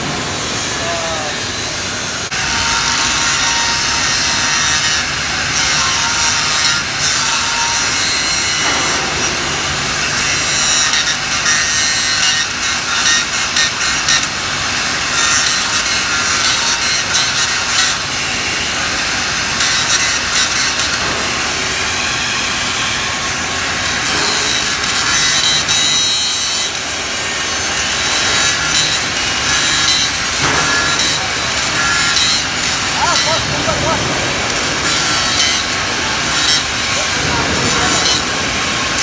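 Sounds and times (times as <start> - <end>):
welding arc crackling: 0.0 - 39.0.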